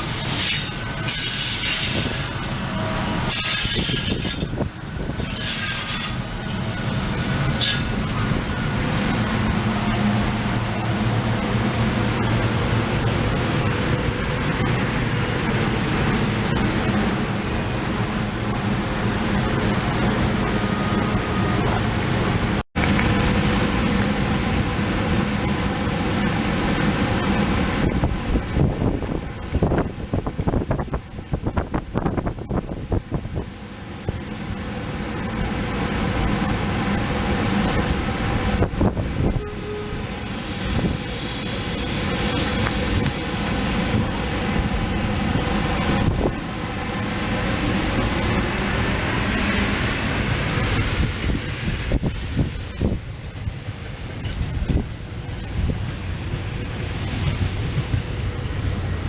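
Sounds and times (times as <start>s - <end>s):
train running on rails: 0.0s - 59.0s
high thin wheel squeal: 0.3s - 2.4s, 3.3s - 4.6s, 5.2s - 6.2s, 7.6s - 8.0s, 16.9s - 19.3s.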